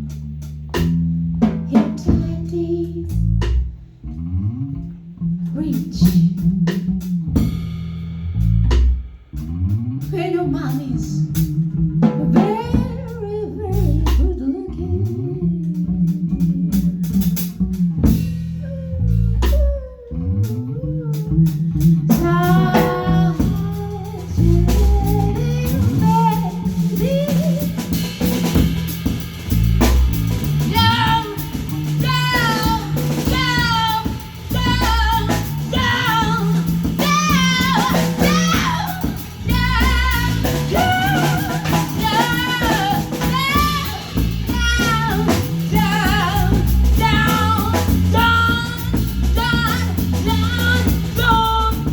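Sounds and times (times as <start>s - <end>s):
rock band playing: 21.4s - 51.9s
lead vocal singing: 22.1s - 28.0s, 30.7s - 51.9s.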